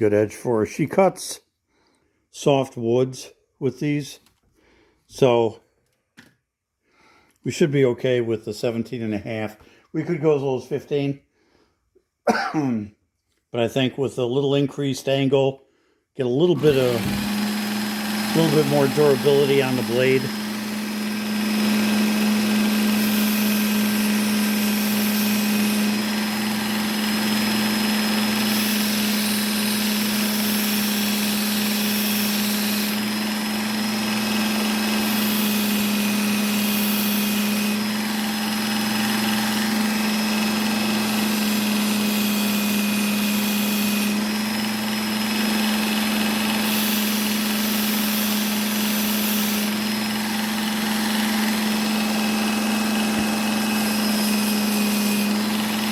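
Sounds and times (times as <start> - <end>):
belt sharpener motor hum: 16.5 - 55.9.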